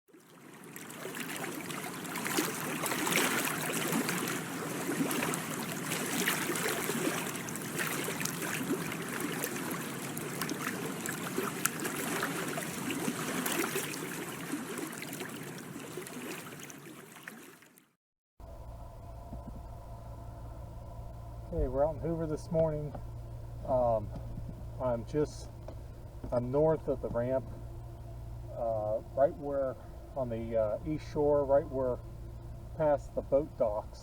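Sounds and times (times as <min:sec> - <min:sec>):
water splashing and lapping: 0:00.1 - 0:18.0.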